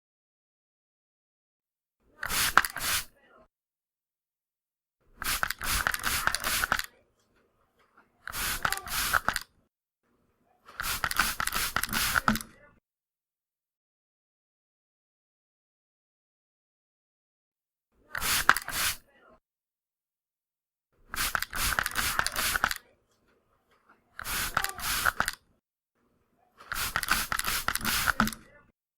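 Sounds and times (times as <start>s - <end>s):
atomizer spraying: 2.2s - 3.1s, 5.2s - 6.9s, 8.2s - 9.4s, 10.7s - 12.5s, 18.1s - 19.0s, 21.1s - 22.8s, 24.1s - 25.4s, 26.6s - 28.5s
quick clicks of sprayer: 2.2s - 3.1s, 5.2s - 6.9s, 8.2s - 9.5s, 10.7s - 12.6s, 18.1s - 19.0s, 21.1s - 22.8s, 23.7s - 25.4s, 26.6s - 28.5s.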